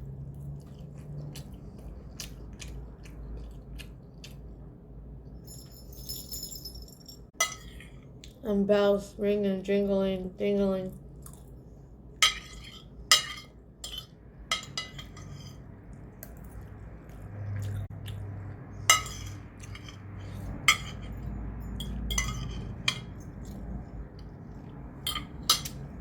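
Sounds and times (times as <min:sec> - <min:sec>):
metal objects clinking and jingling: 0:05.4 - 0:07.6.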